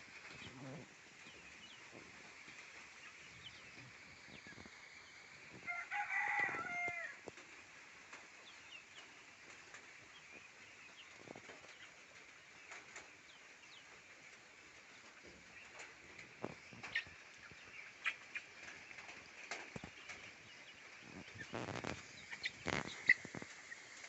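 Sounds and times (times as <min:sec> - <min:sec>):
rooster crowing: 0:05.6 - 0:07.2.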